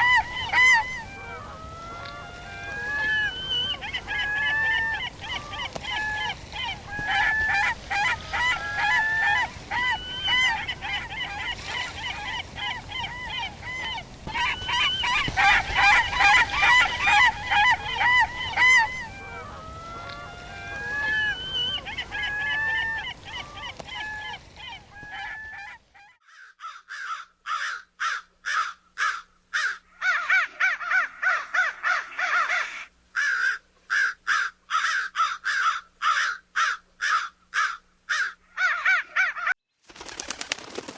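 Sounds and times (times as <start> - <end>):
geese honking: 0.0 - 39.5
crows cawing: 14.3 - 39.5.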